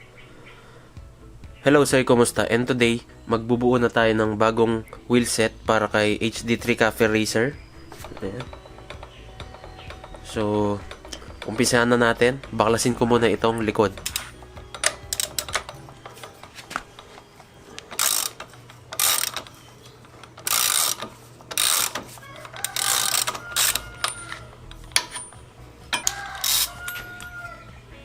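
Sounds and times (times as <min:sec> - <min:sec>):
tools clinking on metal: 0:07.7 - 0:27.6
ratchet wrench clicking: 0:07.8 - 0:27.5.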